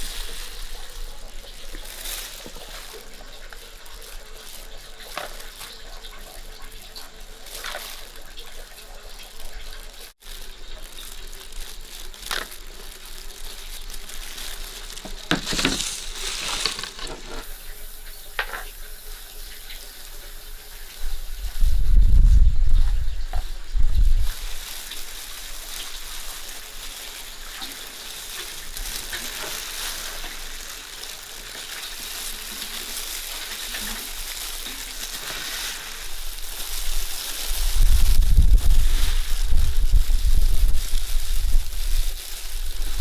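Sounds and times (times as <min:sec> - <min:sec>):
running water: 0:00.0 - 0:43.0
utensils knocking: 0:15.0 - 0:17.4.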